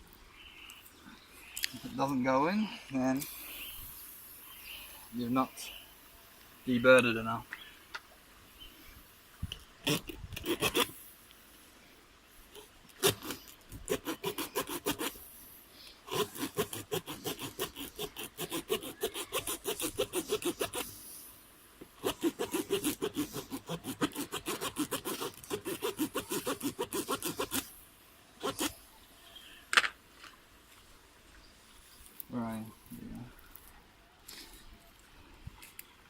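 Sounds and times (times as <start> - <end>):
rasp tool reaming tyre puncture: 9.9 - 11.0, 13.0 - 15.3, 16.1 - 21.0, 22.0 - 27.7, 28.4 - 28.8.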